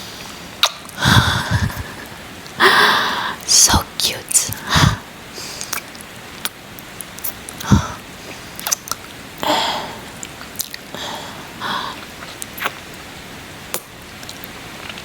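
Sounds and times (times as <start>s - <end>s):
faint rain: 0.0s - 15.0s
soft breaths: 1.0s - 5.8s, 7.6s - 8.7s, 9.4s - 10.2s, 10.9s - 12.4s
wet lip smacks: 5.6s - 7.8s, 8.6s - 9.0s, 12.0s - 13.0s.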